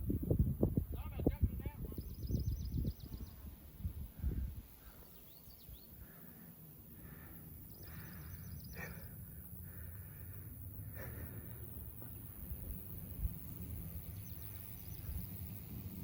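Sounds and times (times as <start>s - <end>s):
low wind noise and rustle: 0.0s - 8.0s
songbird chirping and trilling: 1.6s - 3.8s, 4.6s - 6.1s, 7.6s - 9.0s.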